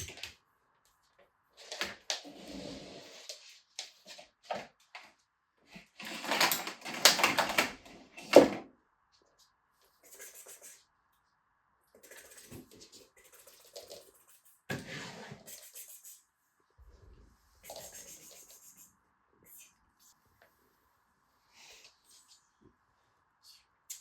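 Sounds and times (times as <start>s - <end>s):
household objects rustling and scraping: 1.6s - 8.6s, 14.7s - 15.6s.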